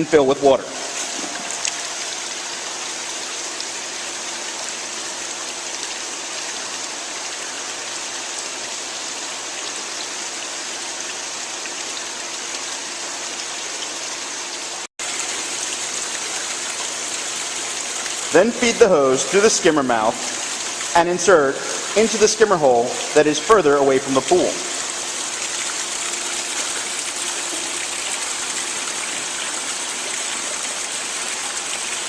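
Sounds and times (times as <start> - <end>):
water rushing into hose: 15.0 - 32.0.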